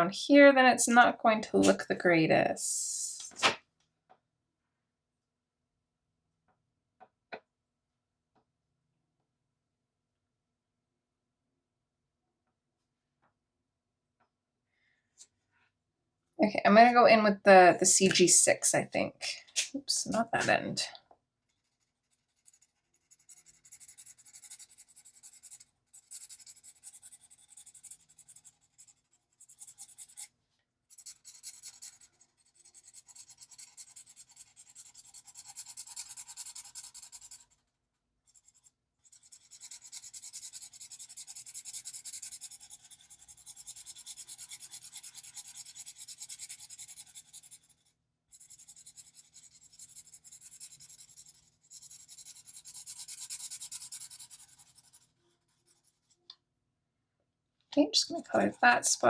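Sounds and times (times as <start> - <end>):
marker scratching on paper: 0.9 - 1.8, 19.6 - 20.9, 21.6 - 37.6, 38.3 - 56.2.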